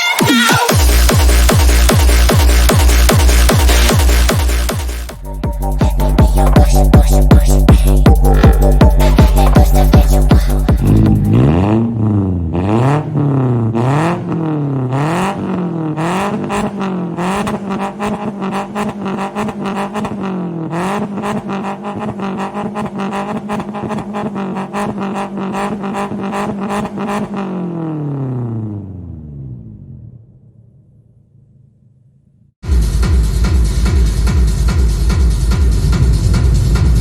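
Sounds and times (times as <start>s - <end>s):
van engine revving: 0.7s - 30.0s.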